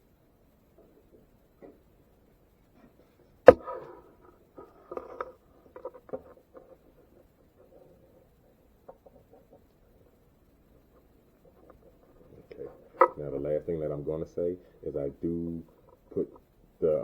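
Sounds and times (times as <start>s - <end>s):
sharp knock: 3.5s - 3.9s.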